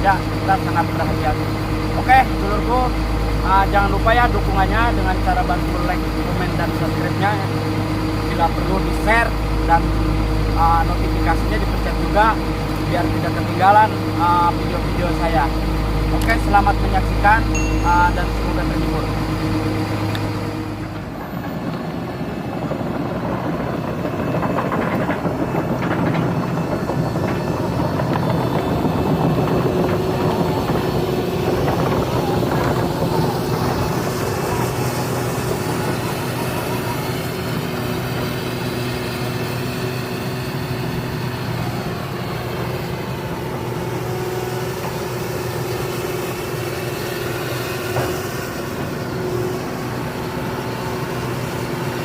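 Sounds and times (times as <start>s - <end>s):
excavator diesel engine running: 0.0s - 52.0s.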